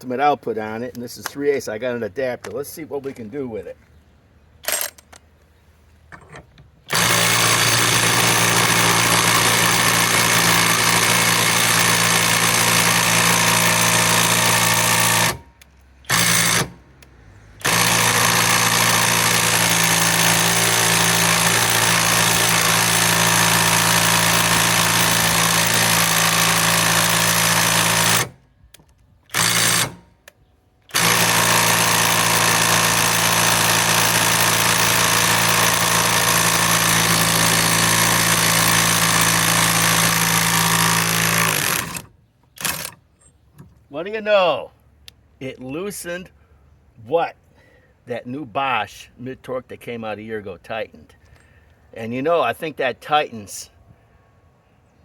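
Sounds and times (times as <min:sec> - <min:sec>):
impact wrench hammering: 0:06.9 - 0:15.4, 0:17.6 - 0:28.4, 0:29.3 - 0:30.0, 0:30.9 - 0:42.0.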